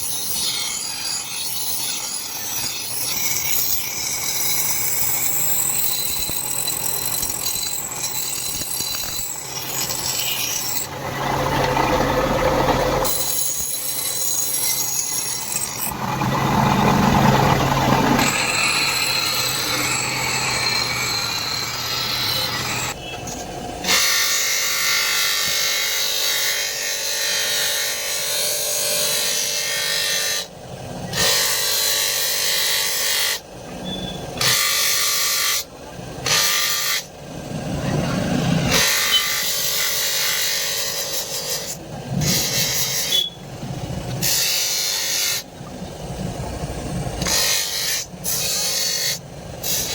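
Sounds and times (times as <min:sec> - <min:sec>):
tool rasping on steel blade: 0:00.0 - 0:11.0, 0:13.0 - 0:16.0, 0:38.7 - 0:43.4, 0:47.2 - 0:49.9.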